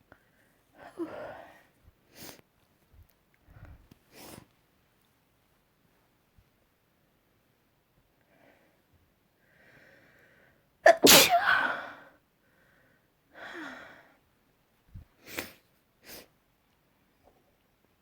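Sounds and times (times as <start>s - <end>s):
person sneezing loudly: 10.9s - 11.9s.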